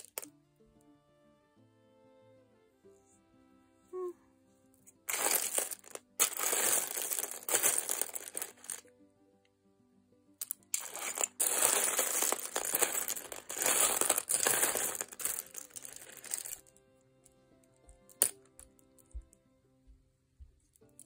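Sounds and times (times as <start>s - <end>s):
plastic bag crinkling: 5.1s - 8.8s, 10.8s - 16.6s.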